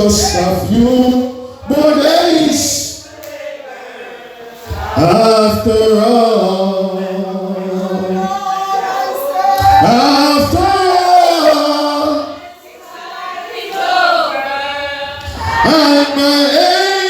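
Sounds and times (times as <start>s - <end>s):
slow gospel song: 0.0s - 17.0s.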